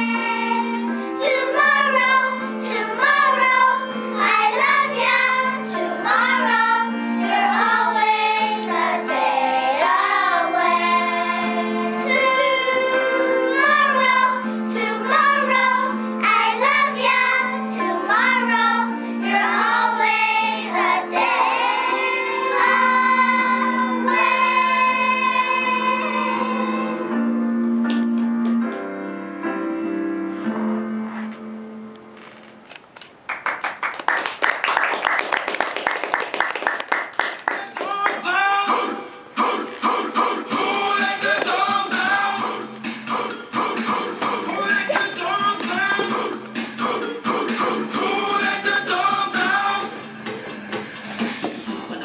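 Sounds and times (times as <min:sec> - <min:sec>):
children singing: 0:00.0 - 0:27.2.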